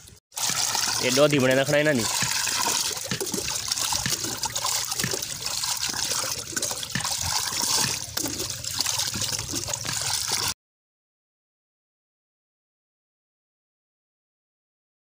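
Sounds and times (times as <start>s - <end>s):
liquid trickling and splashing: 0.0s - 10.6s.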